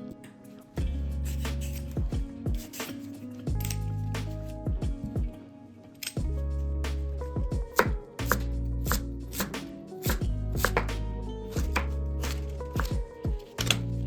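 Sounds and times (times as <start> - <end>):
background music with deep bass: 0.0 - 14.0
knife chopping on cutting board: 7.7 - 11.0, 11.6 - 13.9.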